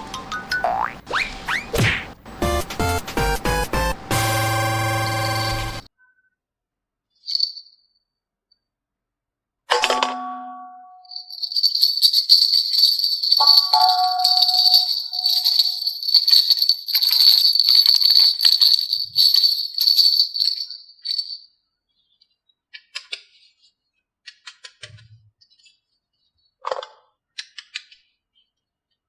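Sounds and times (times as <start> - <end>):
jingling bells in music: 2.4 - 5.9, 11.1 - 21.3.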